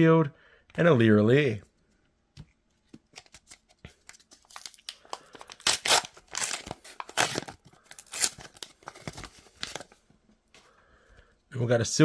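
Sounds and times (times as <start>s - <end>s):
card pack wrapper crinkling and tearing: 3.0s - 10.0s.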